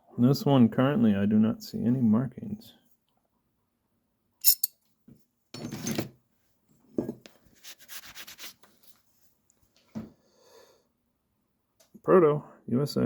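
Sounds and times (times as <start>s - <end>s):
metal tool clinking: 4.4s - 4.7s.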